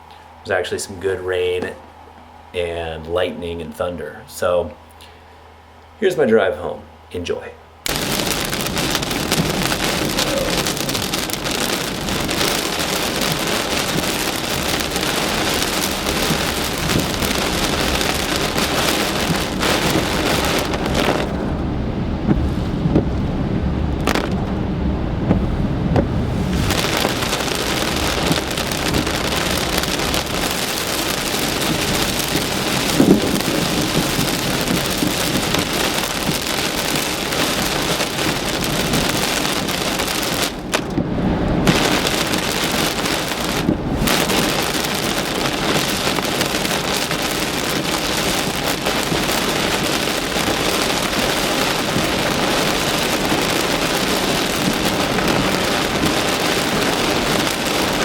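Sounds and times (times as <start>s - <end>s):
heavy rain on car roof: 7.9s - 58.0s
short thump: 24.0s - 26.8s.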